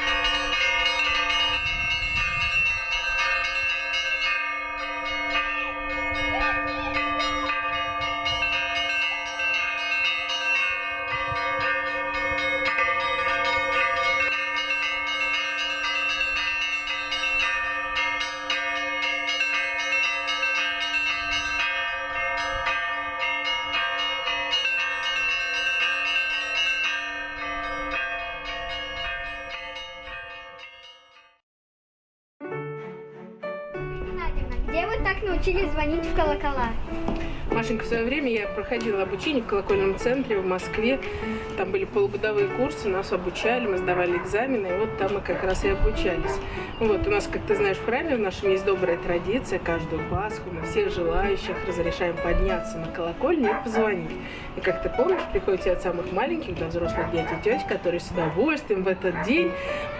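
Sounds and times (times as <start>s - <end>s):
deep steady bell tone: 0.0s - 31.4s
peal of church bells: 0.0s - 31.4s, 34.2s - 59.9s.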